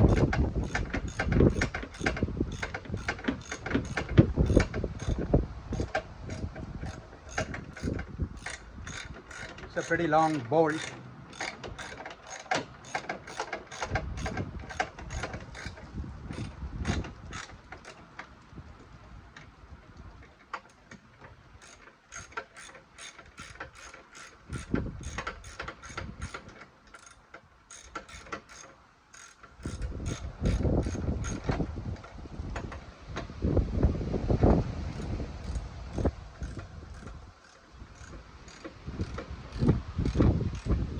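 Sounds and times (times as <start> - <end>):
ratchet wrench clicking: 5.8 - 15.8, 21.6 - 31.4.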